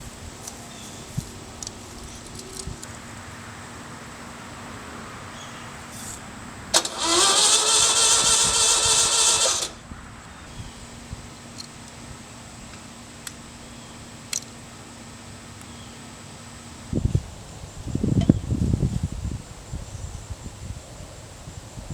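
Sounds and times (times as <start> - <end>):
engine cranking on starter: 6.7 - 9.8.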